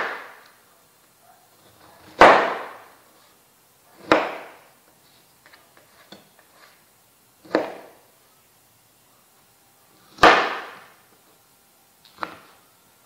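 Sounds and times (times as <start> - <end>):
knife chopping on cutting board: 4.0 - 4.5, 7.4 - 7.9.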